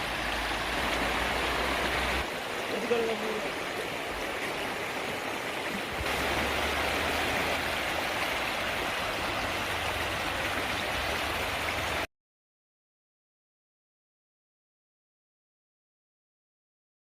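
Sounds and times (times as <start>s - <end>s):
stream water rushing: 0.0s - 12.1s.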